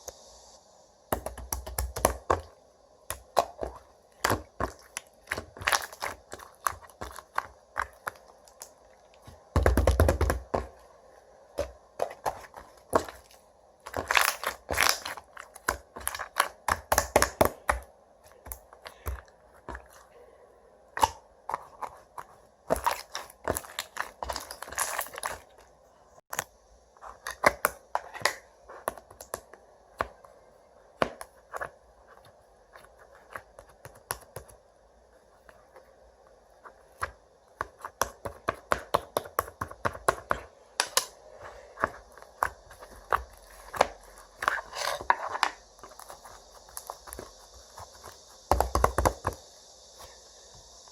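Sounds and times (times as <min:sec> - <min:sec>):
slime squished by hand: 0:03.1 - 0:10.6, 0:11.6 - 0:20.0.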